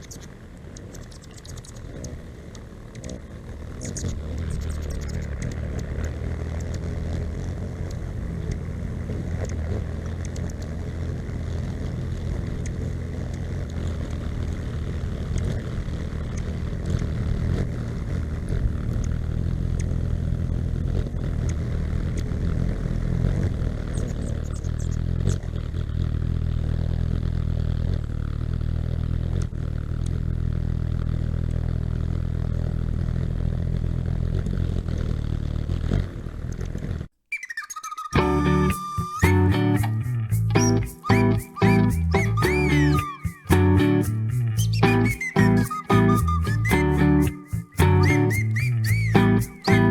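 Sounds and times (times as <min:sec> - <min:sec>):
high bird chirps: 0:37.3 - 0:49.9.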